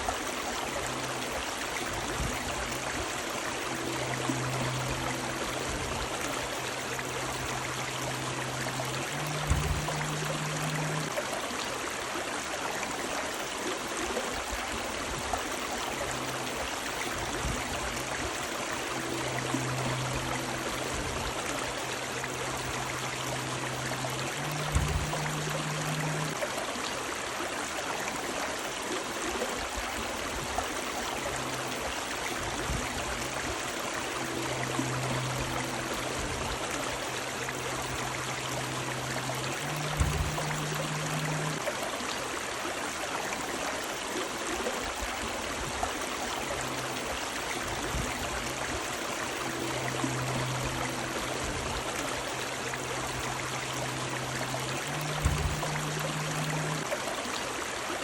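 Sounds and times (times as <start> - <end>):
river water babbling: 0.0 - 58.0
low hum: 0.1 - 11.2, 15.3 - 26.5, 30.7 - 41.7, 46.1 - 57.0.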